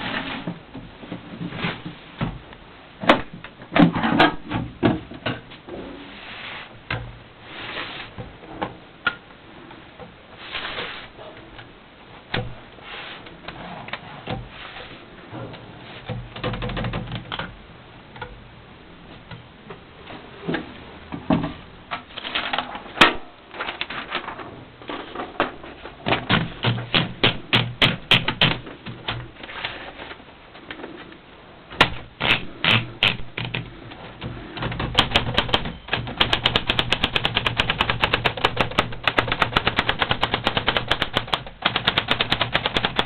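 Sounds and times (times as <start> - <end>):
typewriter keys clacking: 34.8 - 43.0.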